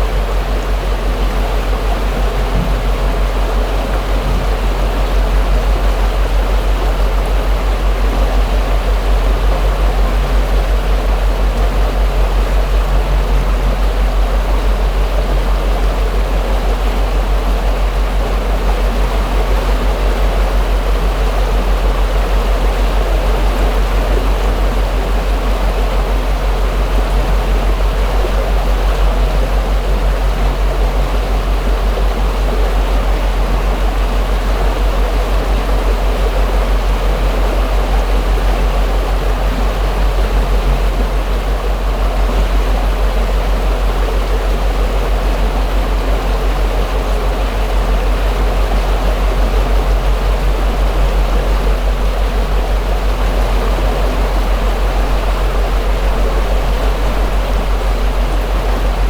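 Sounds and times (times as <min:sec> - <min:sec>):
boat motor humming: 0:00.0 - 0:59.0
water splashing along hull: 0:00.0 - 0:59.0.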